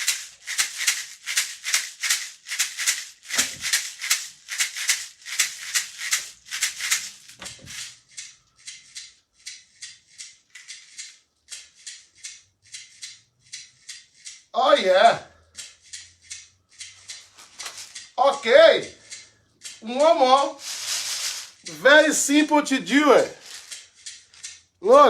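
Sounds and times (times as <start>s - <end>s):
tin can shaker shaken: 0.0s - 8.0s, 17.4s - 18.2s, 19.8s - 23.9s.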